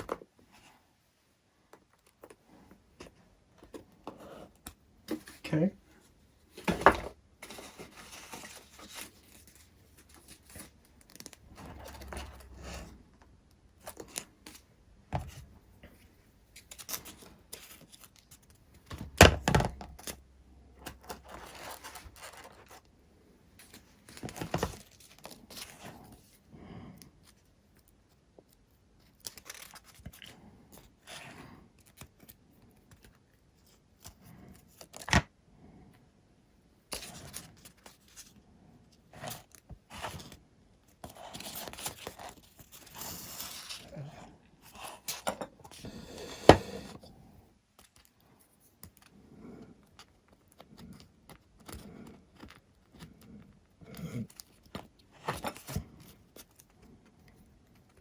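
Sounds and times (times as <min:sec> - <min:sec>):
scraping and rustling: 0:06.5 - 0:14.6.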